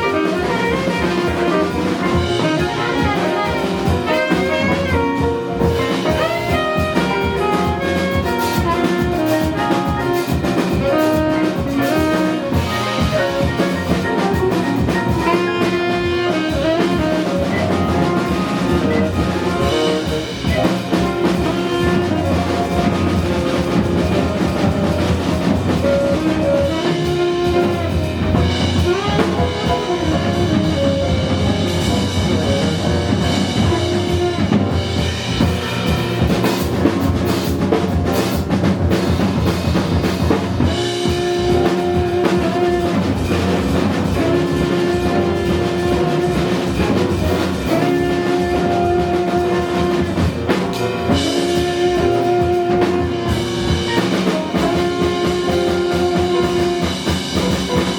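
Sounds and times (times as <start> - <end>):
drum kit: 0.0 - 57.9
live jazz band playing: 0.0 - 57.9.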